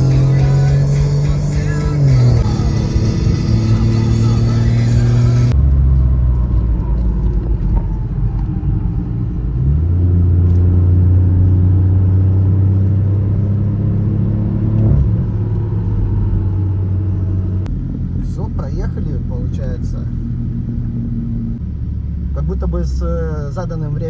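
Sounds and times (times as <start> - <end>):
background music: 0.0 - 5.5
turbo car engine running: 0.0 - 24.0.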